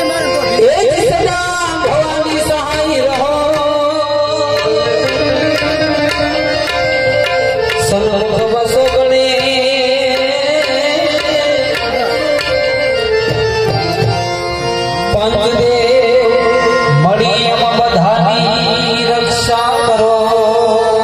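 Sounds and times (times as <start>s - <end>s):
harmonium melody: 0.0s - 21.0s
tabla strokes: 0.0s - 21.0s.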